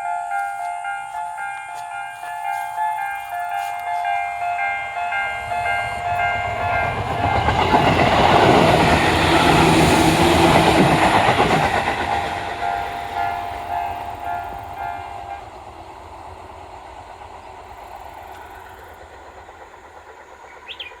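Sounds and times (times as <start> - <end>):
level crossing bells ringing: 0.0 - 9.3
electric train passing: 0.0 - 21.0.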